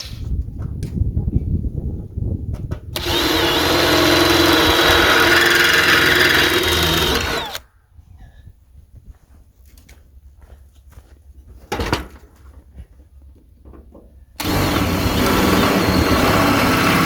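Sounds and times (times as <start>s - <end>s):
low rumbling: 1.1s - 7.6s, 14.4s - 17.0s
power tool motor whine: 3.0s - 7.6s, 14.4s - 17.0s.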